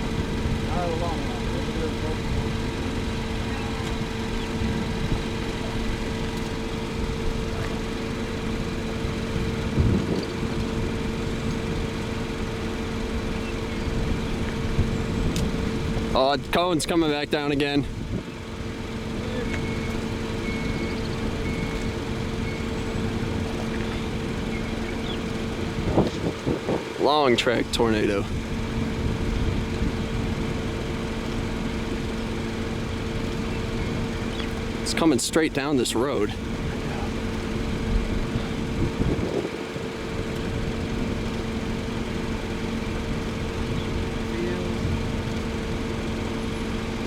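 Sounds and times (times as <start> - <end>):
road noise: 0.0 - 47.0
vehicle engine hum: 0.0 - 47.0.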